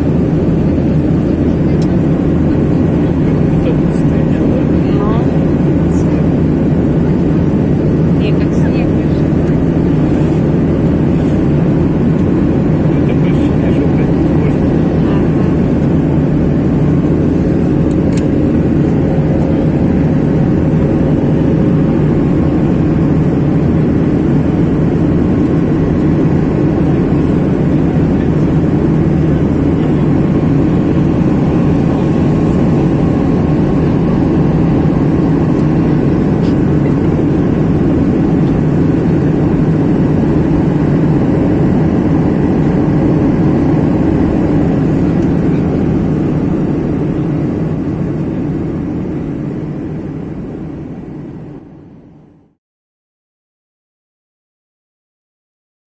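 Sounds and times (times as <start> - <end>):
jet engine and airflow rush: 0.0 - 52.6
faint steady tones: 29.9 - 35.1.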